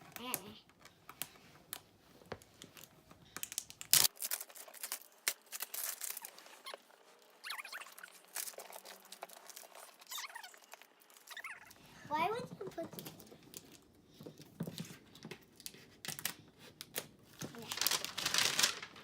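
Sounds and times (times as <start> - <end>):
packaging tearing and crinkling: 2.8 - 6.8, 7.4 - 11.6, 15.6 - 19.0.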